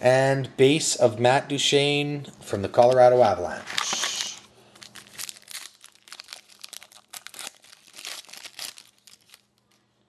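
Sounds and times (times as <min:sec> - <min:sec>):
foil wrapper crinkling and tearing: 0:03.6 - 0:09.9.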